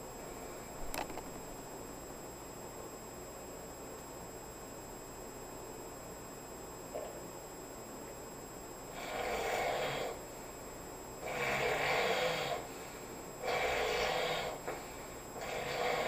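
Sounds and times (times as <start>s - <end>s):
person snoring: 8.9s - 10.2s, 11.2s - 12.7s, 13.4s - 14.8s, 15.4s - 16.0s.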